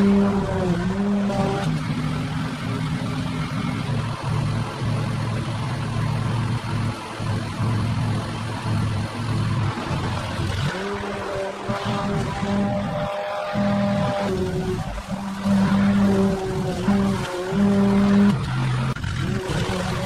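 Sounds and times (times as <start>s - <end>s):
pressure washer motor hum: 8.6s - 20.0s.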